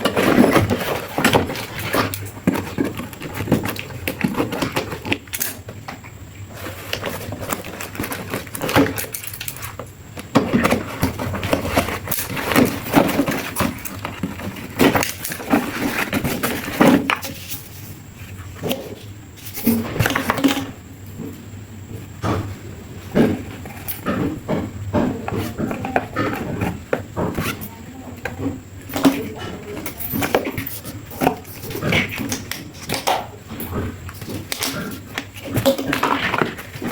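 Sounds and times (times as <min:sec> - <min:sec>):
hard objects knocking and clattering: 0:00.0 - 0:17.9, 0:22.0 - 0:36.9.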